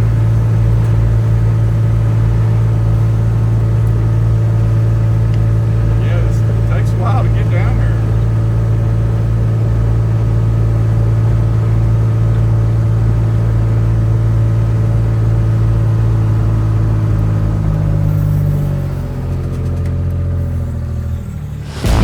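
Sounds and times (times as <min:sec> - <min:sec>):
engine running: 0:21.5 - 0:22.0.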